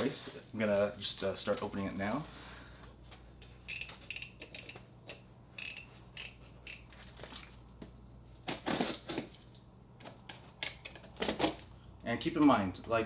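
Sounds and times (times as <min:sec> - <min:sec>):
packing tape squeaking: 0:08.5 - 0:09.3.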